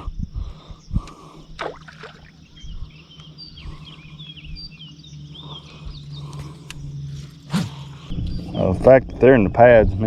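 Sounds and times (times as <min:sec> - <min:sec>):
birds chirping and singing: 0:00.0 - 0:10.0.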